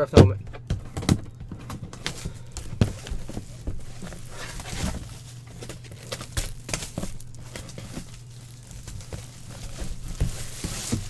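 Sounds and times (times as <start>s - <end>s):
packaging taps and knocks: 0.0s - 11.0s
packaging crinkling: 0.1s - 11.0s.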